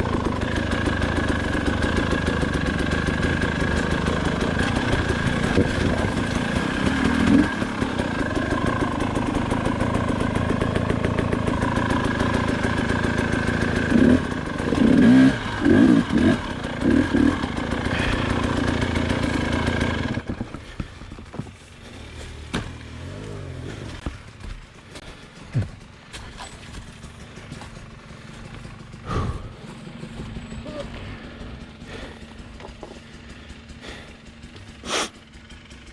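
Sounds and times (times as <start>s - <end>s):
dirt bike engine running: 0.0s - 35.9s
engine throttle blips: 0.0s - 35.9s
quiet clatter: 20.1s - 33.6s.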